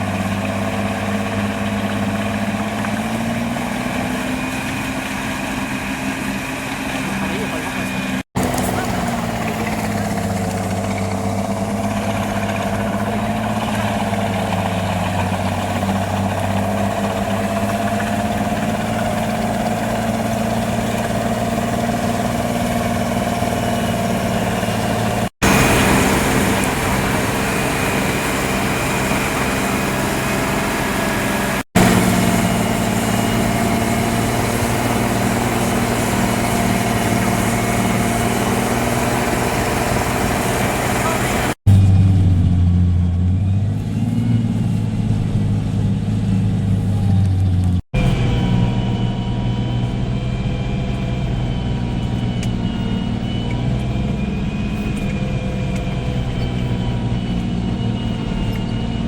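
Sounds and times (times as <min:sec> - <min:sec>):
large engine running steadily: 0:00.0 - 0:59.0.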